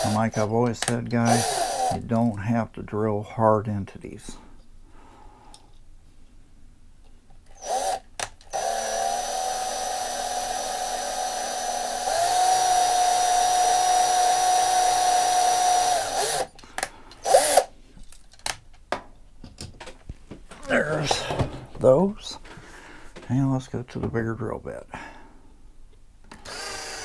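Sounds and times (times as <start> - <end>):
small electric drill whining: 0.0 - 0.5, 1.2 - 2.0, 7.5 - 16.6, 17.2 - 17.7, 26.3 - 27.0.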